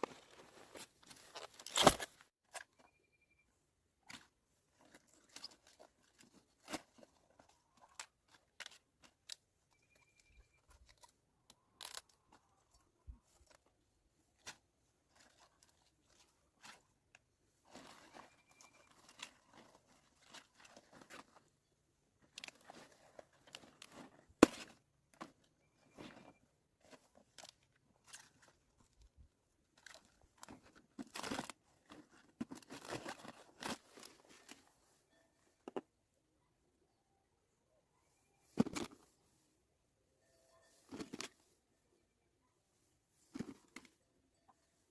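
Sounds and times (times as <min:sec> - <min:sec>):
crunching and rustling: 0:00.0 - 0:02.7, 0:04.0 - 0:35.0.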